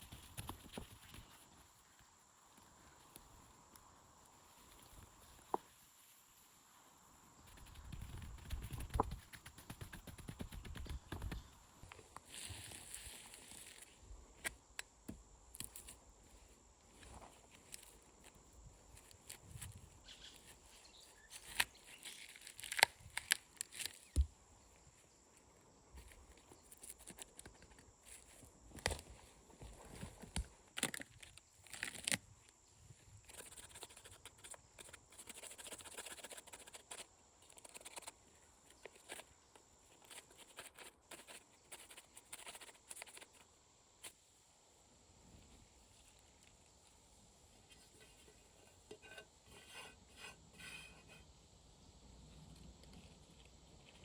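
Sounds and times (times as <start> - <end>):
twigs and brush rustling: 10.3 - 14.5, 15.6 - 24.4, 26.0 - 32.5
twigs snapping: 22.3 - 24.2, 30.2 - 32.2.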